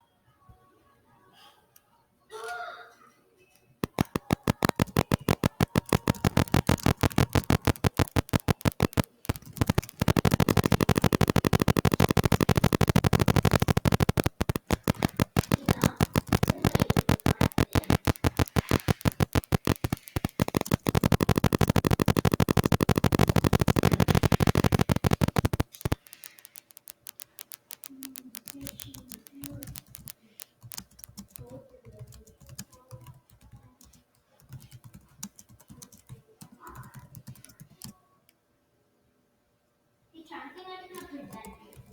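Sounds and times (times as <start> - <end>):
keyboard typing clicks: 3.8 - 33.9, 34.5 - 36.2, 36.8 - 37.9.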